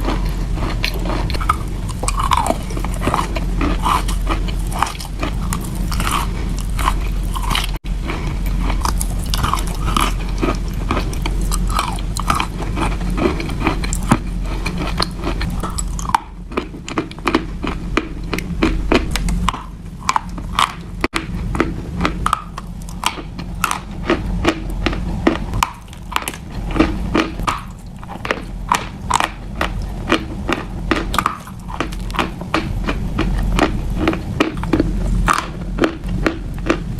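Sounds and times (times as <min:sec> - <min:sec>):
chewing wet chalk crunches: 0:00.0 - 0:36.8.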